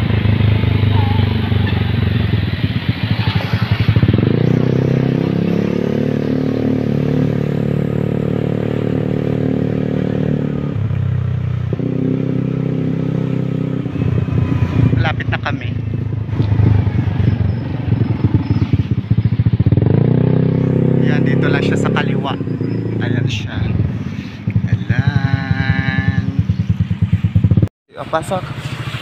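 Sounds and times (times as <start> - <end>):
motorcycle engine running: 0.0 - 29.0.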